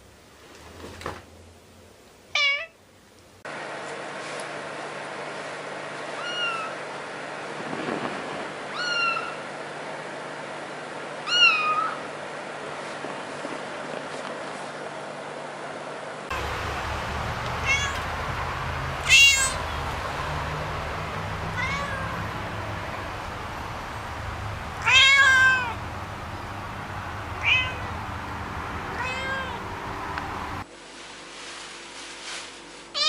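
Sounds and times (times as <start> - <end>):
low hum and hiss: 0.0 - 33.0
cat meowing: 2.4 - 2.8, 6.2 - 6.8, 8.7 - 9.4, 11.2 - 12.0, 17.6 - 18.1, 19.0 - 19.8, 21.4 - 22.3, 24.8 - 25.8, 27.4 - 28.0, 29.0 - 29.6.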